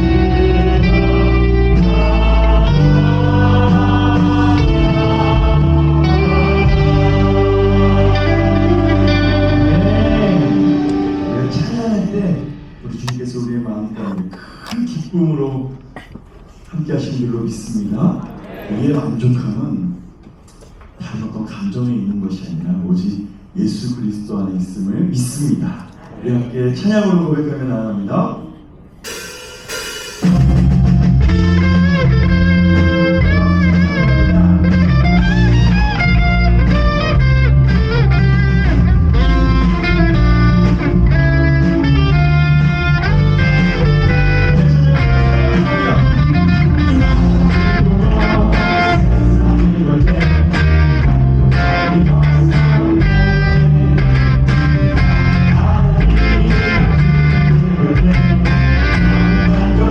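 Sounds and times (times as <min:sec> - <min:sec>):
electric guitar: 0:00.0 - 0:11.6, 0:29.1 - 0:59.9
heavy bass line: 0:00.0 - 0:12.3, 0:29.1 - 0:59.9
worship band playing: 0:00.0 - 0:14.8, 0:29.0 - 0:59.9.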